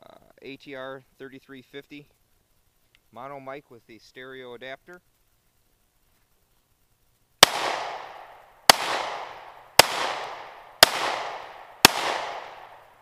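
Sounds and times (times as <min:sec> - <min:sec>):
pistol shots with echo: 0:07.4 - 0:13.0.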